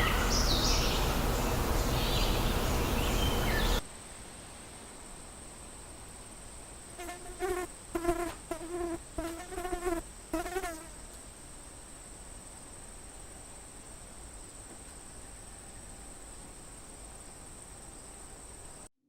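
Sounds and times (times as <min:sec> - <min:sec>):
faint high-pitched whine: 0:00.0 - 0:18.9
flying insect buzzing: 0:07.0 - 0:11.0.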